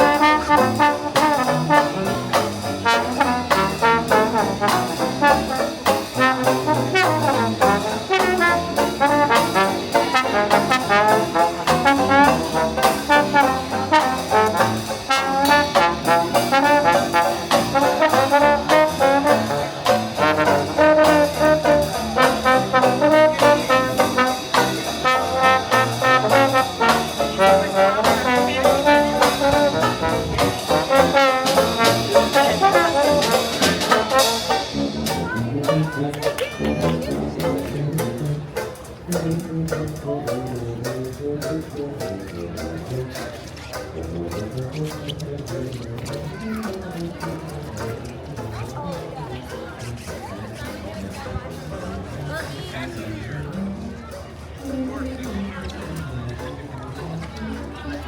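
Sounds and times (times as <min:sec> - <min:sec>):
jazz band playing: 0:00.0 - 0:51.8.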